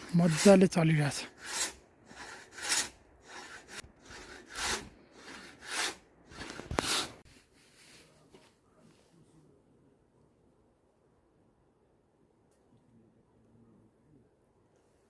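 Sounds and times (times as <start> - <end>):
hand saw cutting wood: 0.0 - 7.2.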